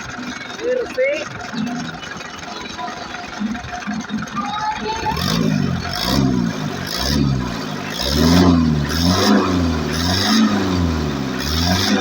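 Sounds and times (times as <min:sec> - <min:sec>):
diesel engine revving: 0:03.3 - 0:12.0.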